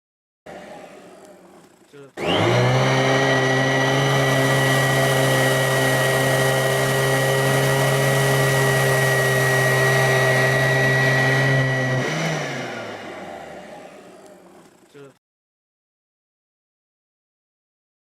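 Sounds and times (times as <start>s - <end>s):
upright vacuum cleaner motor whine: 0.5s - 15.0s.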